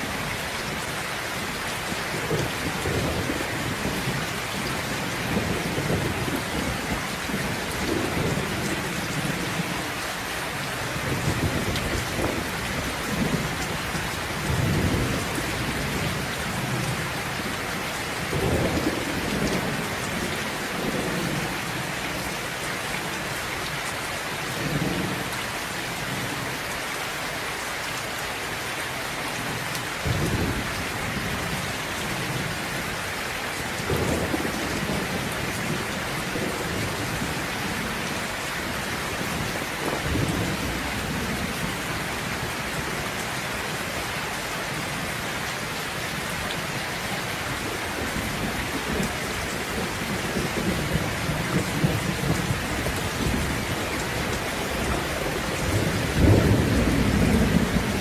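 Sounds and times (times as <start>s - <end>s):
steady rain falling: 0.0s - 58.0s
thunder rumbling: 2.1s - 9.7s, 10.8s - 17.5s, 33.6s - 43.8s, 48.0s - 58.0s.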